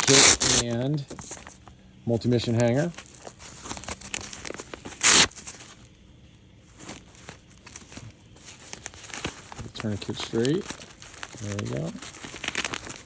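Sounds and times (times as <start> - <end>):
fabric ripping: 0.0 - 0.8, 3.1 - 5.5, 10.6 - 13.0
fabric and straps rustling: 0.0 - 5.9, 6.6 - 13.0.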